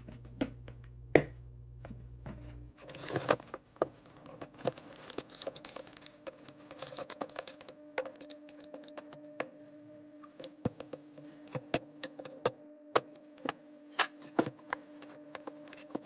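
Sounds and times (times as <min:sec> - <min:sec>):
plastic rustle: 0:02.7 - 0:09.0.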